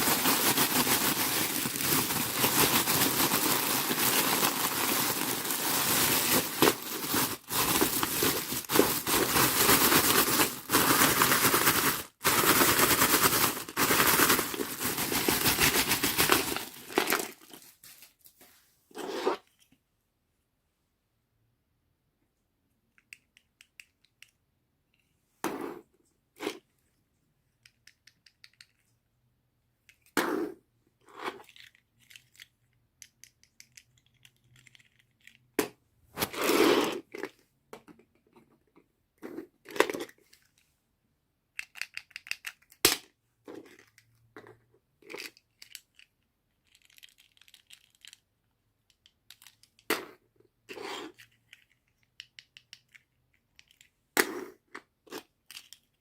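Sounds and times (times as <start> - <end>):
packaging tearing: 0.0 - 17.4
packaging rustling: 0.0 - 18.2
packaging clicks: 0.1 - 17.4.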